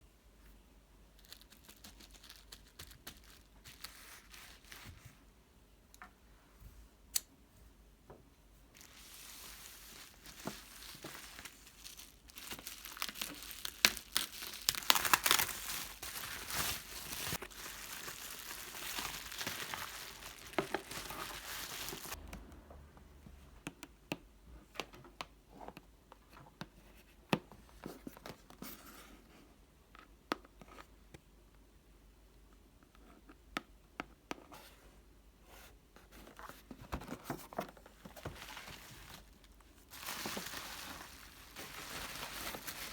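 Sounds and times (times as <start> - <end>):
packaging tearing and crinkling: 8.8 - 22.2, 39.9 - 42.9.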